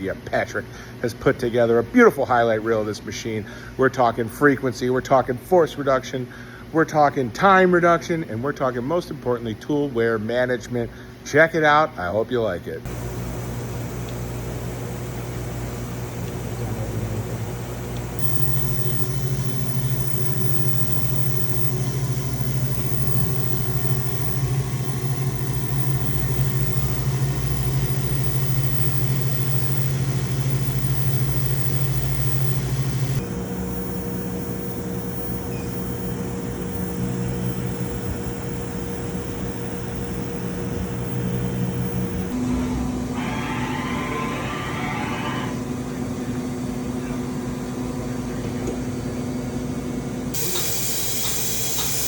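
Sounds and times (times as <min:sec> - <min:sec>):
machine humming with low tone: 0:12.9 - 0:52.0.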